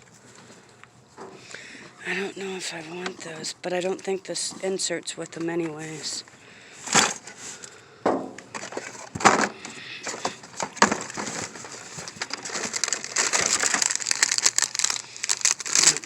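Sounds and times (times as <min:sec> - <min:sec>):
packaging crinkling and rustling: 0:08.5 - 0:16.0.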